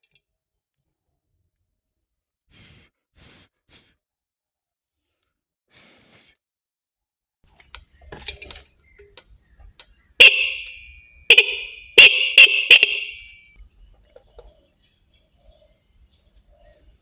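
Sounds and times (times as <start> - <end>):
motorbike horn beeping: 10.2 - 13.4.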